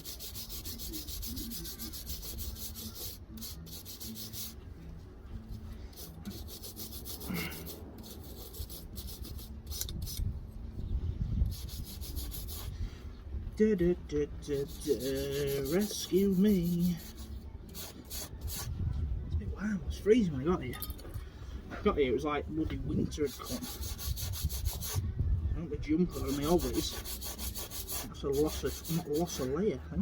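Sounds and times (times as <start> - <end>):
wire brush scrubbing metal: 0.0 - 4.6, 5.8 - 10.2, 11.5 - 12.7, 14.5 - 18.7, 23.0 - 25.0, 26.0 - 29.8.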